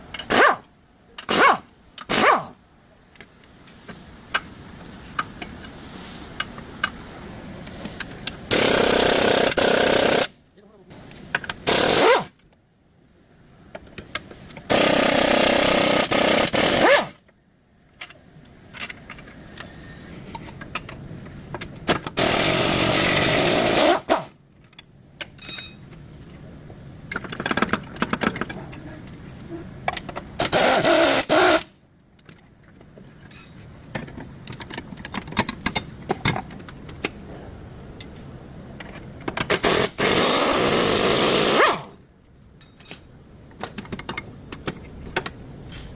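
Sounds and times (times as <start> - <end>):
power tool bursts: 8.5 - 10.3, 11.6 - 12.3, 14.7 - 17.1, 22.2 - 24.2, 30.4 - 31.7, 39.5 - 41.9
tools clattering on metal: 25.2 - 26.0, 33.2 - 36.5, 42.6 - 44.7.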